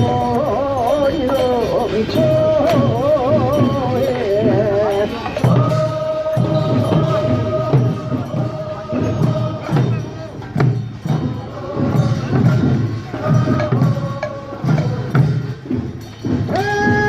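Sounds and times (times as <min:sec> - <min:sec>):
lead voice chanting with vibrato: 0:00.0 - 0:17.0
lower voices singing: 0:00.0 - 0:17.0
sharp percussive strikes: 0:00.0 - 0:17.0.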